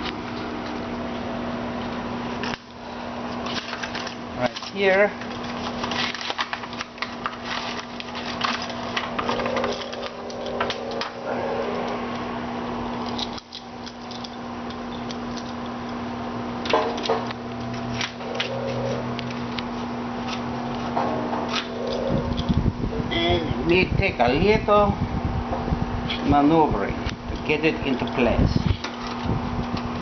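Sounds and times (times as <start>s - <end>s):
steady hum: 0.0s - 30.0s.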